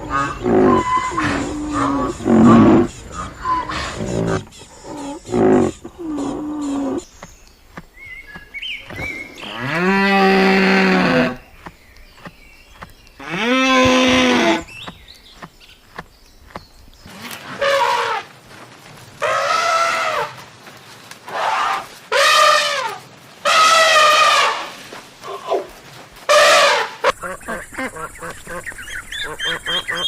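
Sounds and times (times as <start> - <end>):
higher rising and falling animal calls: 0.0 - 7.0, 21.3 - 25.7
low falling animal call: 0.0 - 7.1.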